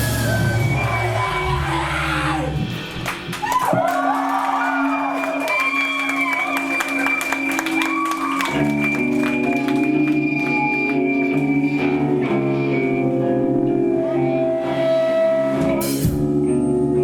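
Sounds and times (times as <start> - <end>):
crowd whooping: 0.0 - 12.8
guitar chords over bass: 8.5 - 17.0.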